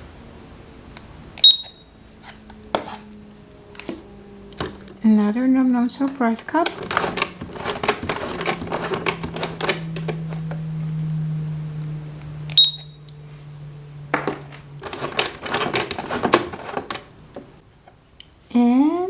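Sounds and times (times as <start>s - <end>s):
low steady hum: 0.0s - 19.0s
short high beep: 1.4s - 1.8s, 12.5s - 13.0s
toy cash register keys clacking: 6.6s - 9.7s.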